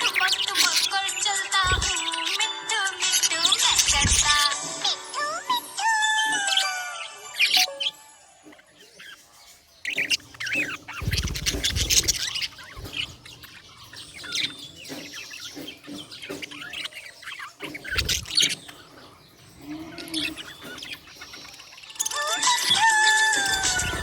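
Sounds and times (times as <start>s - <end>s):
budgerigars chirping: 0.0s - 24.0s
low rumbling thuds: 10.1s - 13.6s.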